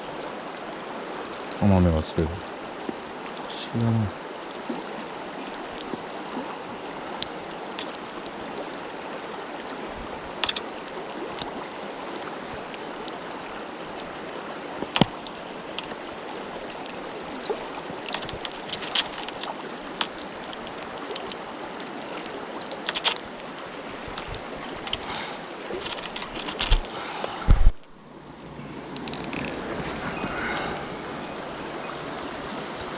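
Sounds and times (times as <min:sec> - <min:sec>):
stream rushing over rocks: 0:00.0 - 0:32.9
sharp clicks and knocks: 0:10.4 - 0:10.6, 0:22.8 - 0:23.2, 0:25.8 - 0:26.9.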